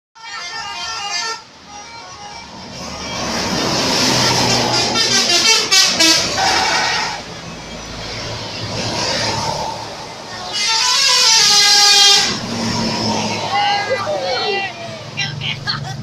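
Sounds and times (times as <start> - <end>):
bus musical horn: 0.2 - 7.4, 10.4 - 14.6.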